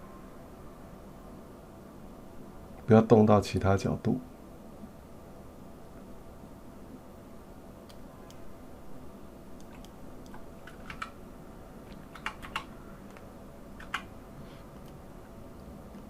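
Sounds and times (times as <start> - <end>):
faint steady hum: 0.0 - 16.0
keyboard keystrokes: 9.6 - 11.2, 11.9 - 13.2, 13.8 - 14.1.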